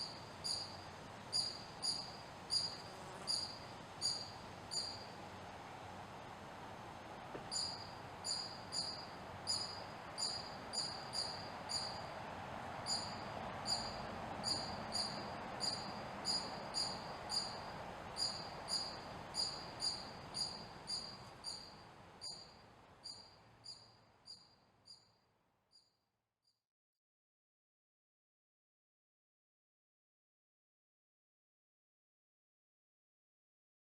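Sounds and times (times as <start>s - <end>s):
small animal high-pitched chirp: 0.0s - 5.1s, 7.5s - 12.1s, 12.9s - 25.1s.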